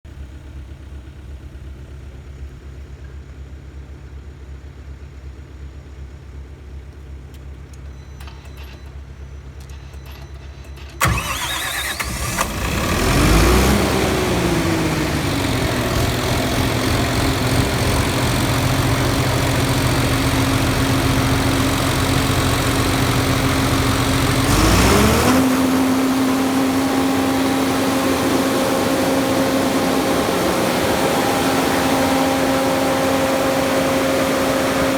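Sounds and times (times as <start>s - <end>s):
diesel engine running: 9.6s - 34.9s
starter cranking engine: 10.7s - 34.9s.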